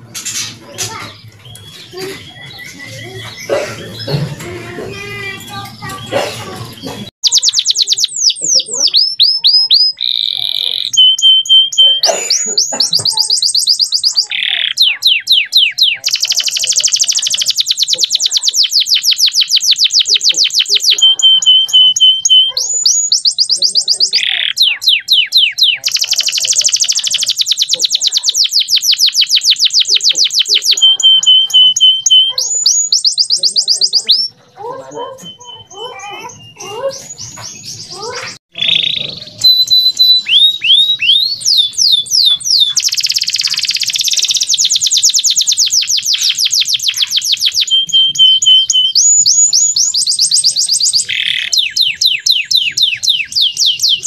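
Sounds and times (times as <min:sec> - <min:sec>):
canary singing trills: 0:00.0 - 0:54.0.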